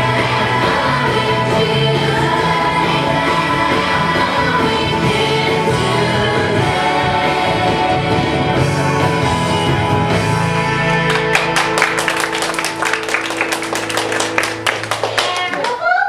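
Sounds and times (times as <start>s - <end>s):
music with sustained chords: 0.0s - 15.3s
sharp claps: 11.1s - 15.8s.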